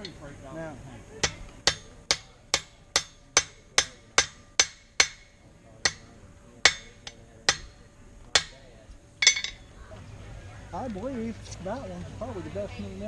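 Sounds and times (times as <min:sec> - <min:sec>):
hammer striking hot metal on anvil: 0:01.2 - 0:08.6, 0:09.2 - 0:09.6.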